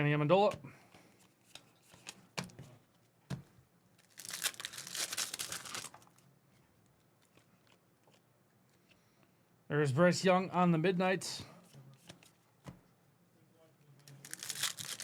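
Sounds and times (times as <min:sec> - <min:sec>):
foil wrapper tearing and crinkling: 0:04.0 - 0:06.2, 0:14.1 - 0:15.0.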